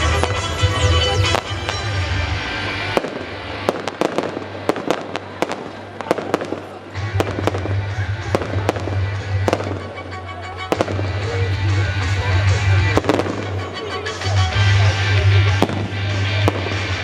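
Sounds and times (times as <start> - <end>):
loud music with heavy bass: 0.0 - 3.6, 7.0 - 17.0
fireworks bursting and cracking: 0.0 - 17.0.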